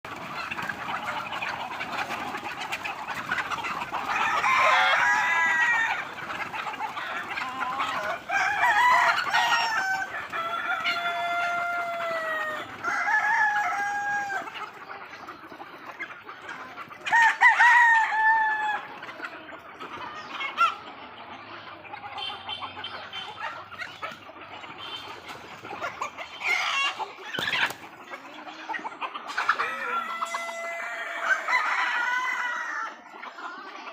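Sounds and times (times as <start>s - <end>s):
roosters crowing: 0.0s - 14.9s, 17.0s - 19.1s, 23.2s - 28.3s, 29.3s - 33.1s
chickens clucking: 0.0s - 33.9s.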